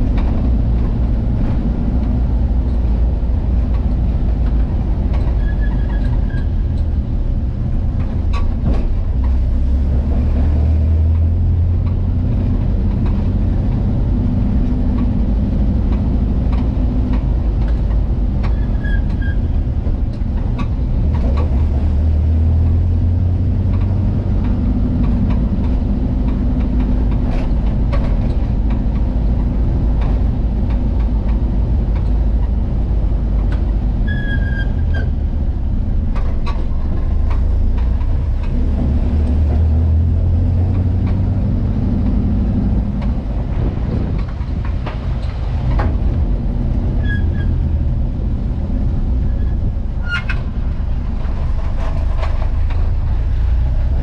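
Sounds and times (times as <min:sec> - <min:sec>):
van engine and road rumble: 0:00.0 - 0:54.0.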